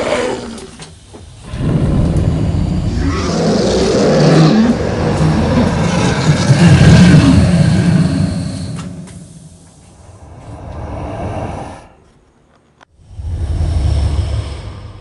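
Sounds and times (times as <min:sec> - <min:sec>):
low rough growling roar: 0:01.4 - 0:09.4.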